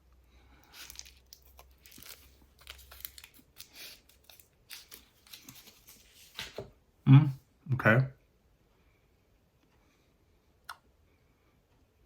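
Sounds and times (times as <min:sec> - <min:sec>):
meat stick being chewed: 0:00.5 - 0:05.6
plastic wrapper crinkling: 0:00.6 - 0:06.7.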